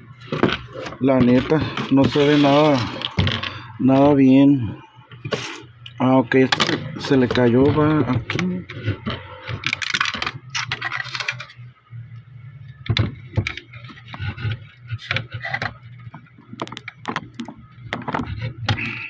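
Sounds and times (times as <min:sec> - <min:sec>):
plastic rustling: 0:00.3 - 0:03.6.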